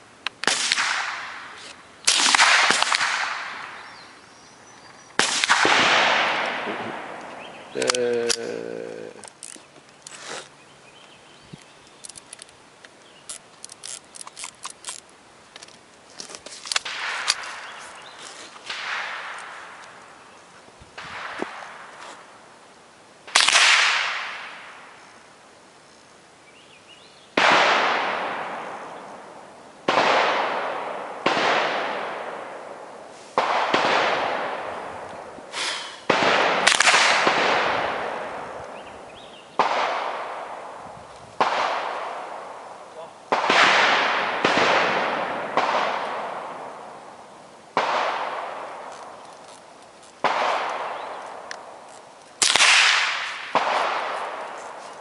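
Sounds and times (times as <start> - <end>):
echoing gunshots: 0.4 - 4.0, 5.2 - 8.4, 16.7 - 20.0, 21.0 - 22.2, 23.3 - 25.0, 27.4 - 40.8, 41.4 - 49.2, 50.2 - 55.0.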